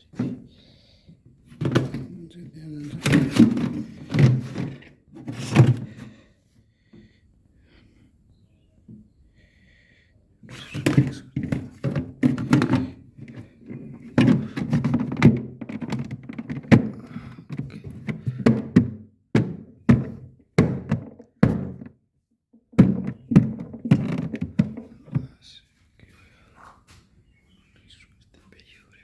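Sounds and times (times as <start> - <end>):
thunks and knocks: 1.5 - 2.2, 2.8 - 6.2, 10.6 - 22.0, 22.7 - 25.3.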